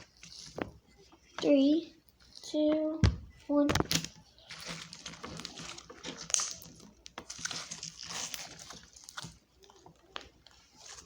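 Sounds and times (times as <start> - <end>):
slime crackling and popping: 3.8 - 11.0.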